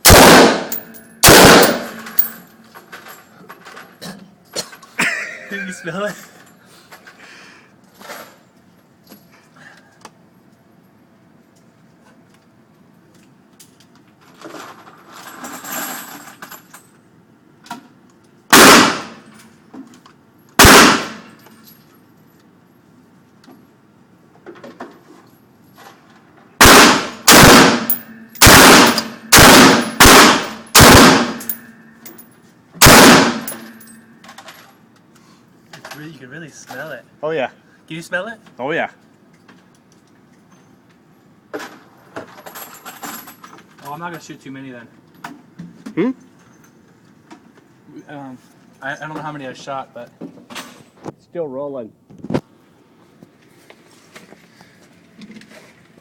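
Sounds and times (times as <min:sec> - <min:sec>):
rifle firing single shots: 0:00.0 - 0:02.4, 0:18.5 - 0:19.2, 0:20.6 - 0:21.3, 0:26.6 - 0:31.6, 0:32.8 - 0:33.7.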